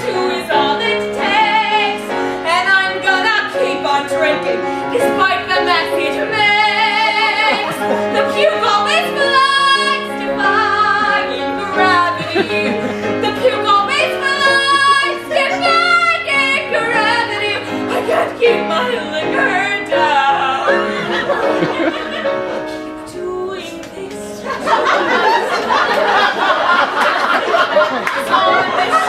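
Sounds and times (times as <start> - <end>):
woman singing with vibrato: 0.0 - 21.3, 22.6 - 24.6
instrumental accompaniment: 0.0 - 29.0.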